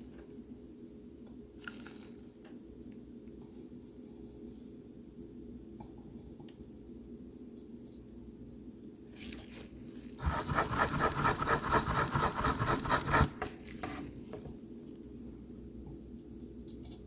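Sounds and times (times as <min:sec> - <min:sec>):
steady low hum: 0:09.8 - 0:17.0.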